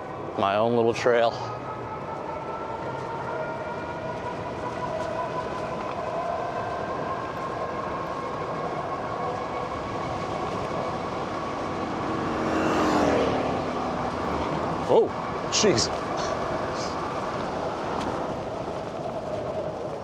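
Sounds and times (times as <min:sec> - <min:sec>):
wind: 0:00.0 - 0:20.0
tyres rumbling on dirt path: 0:09.4 - 0:20.0.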